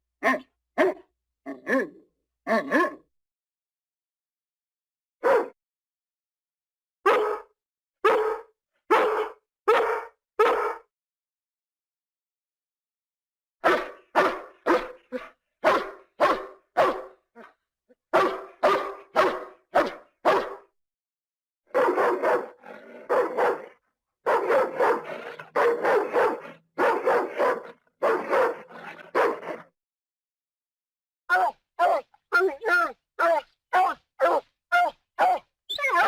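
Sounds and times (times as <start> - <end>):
dogs barking: 0.2 - 3.0, 5.2 - 5.6, 7.1 - 10.9, 13.6 - 17.5, 18.1 - 20.7, 21.7 - 29.7, 31.4 - 36.0.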